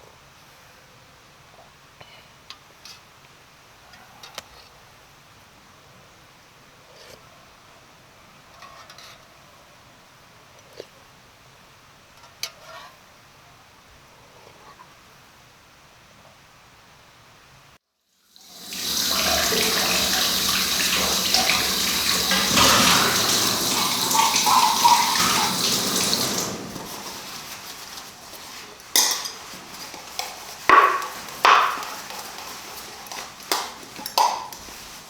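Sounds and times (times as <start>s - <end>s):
water running from a tap into a sink: 18.3s - 35.0s
dishes knocking and clinking: 18.8s - 27.6s, 28.8s - 34.9s.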